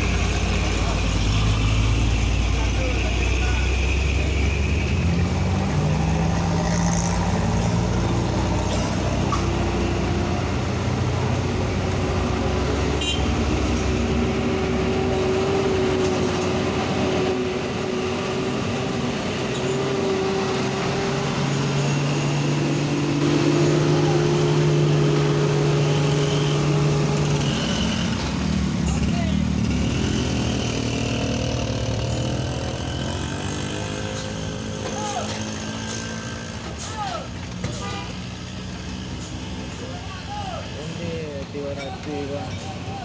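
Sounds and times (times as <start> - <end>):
vehicle engines running: 0.0 - 43.0.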